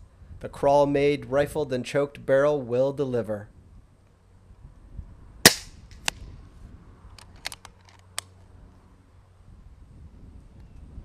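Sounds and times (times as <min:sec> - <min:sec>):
air rifle shot: 0:05.4 - 0:06.2.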